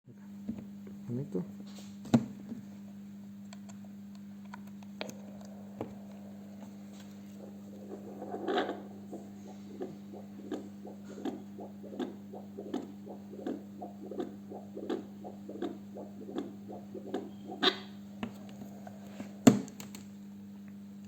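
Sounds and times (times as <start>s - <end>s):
low hum: 2.9s - 21.0s
fetal heartbeat whooshing pulses: 5.0s - 19.8s.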